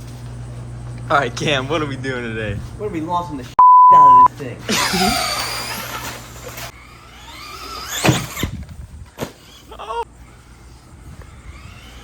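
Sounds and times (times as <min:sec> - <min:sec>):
electric motor whining: 0:05.0 - 0:08.7, 0:11.2 - 0:12.0.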